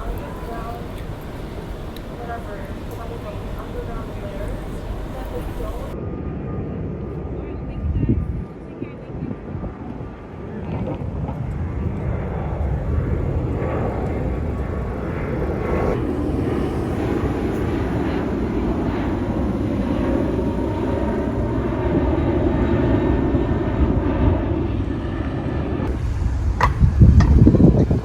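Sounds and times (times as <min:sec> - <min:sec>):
moving vehicle rumble: 0:00.0 - 0:06.0, 0:11.0 - 0:25.0, 0:25.8 - 0:28.0
wind gust on microphone: 0:00.0 - 0:06.0, 0:06.8 - 0:28.0.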